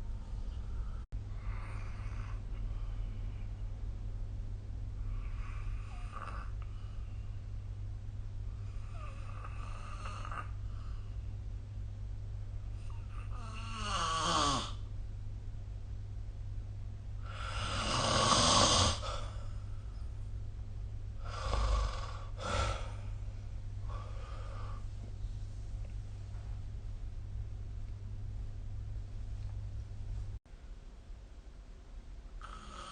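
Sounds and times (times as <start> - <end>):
steady low hum: 0.0 - 32.9
person snoring: 12.9 - 14.8, 17.2 - 19.4, 21.2 - 23.1, 32.4 - 32.9.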